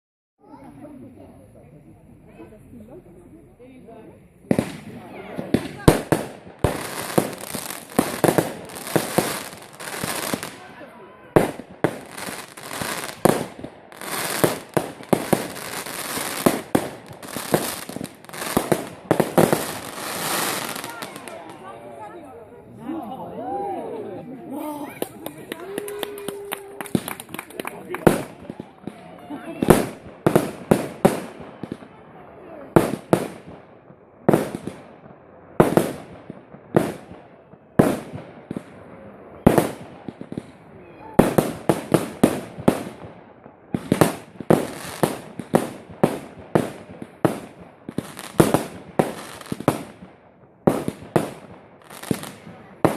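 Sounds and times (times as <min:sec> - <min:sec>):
fireworks bangs: 0:04.4 - 0:22.2, 0:24.9 - 0:52.9
crackling hiss: 0:11.5 - 0:21.6.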